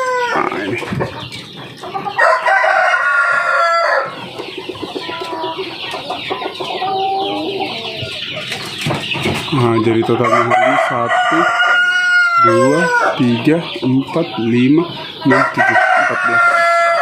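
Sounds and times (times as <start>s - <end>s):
rooster crowing: 0.0s - 0.4s, 2.2s - 4.2s, 10.1s - 13.2s, 15.3s - 17.0s
hens clucking: 0.0s - 17.0s.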